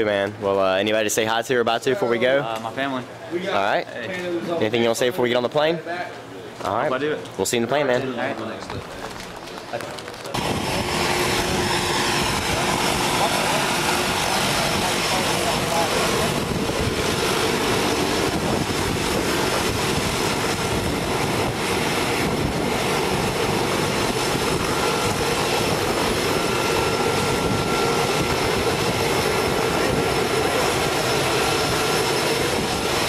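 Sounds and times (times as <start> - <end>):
plane engine and propeller drone: 8.6 - 33.0.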